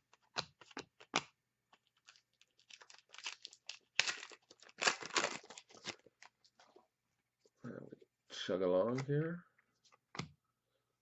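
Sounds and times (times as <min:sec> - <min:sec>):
card pack wrapper tearing: 0:02.0 - 0:06.1
wrapper crinkling: 0:02.0 - 0:06.7.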